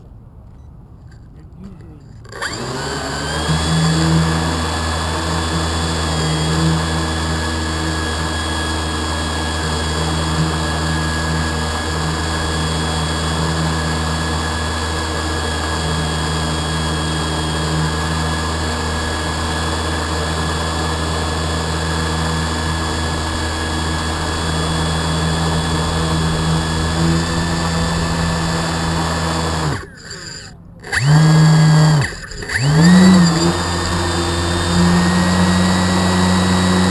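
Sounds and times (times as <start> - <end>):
rc boat motor whining: 2.0 - 36.9.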